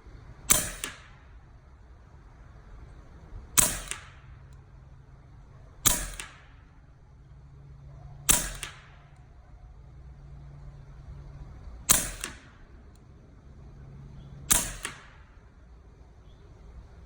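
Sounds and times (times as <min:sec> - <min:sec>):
air rifle shots: 0:00.4 - 0:01.6, 0:03.5 - 0:04.5, 0:05.8 - 0:07.0, 0:08.2 - 0:09.3, 0:11.8 - 0:12.8, 0:14.4 - 0:15.6.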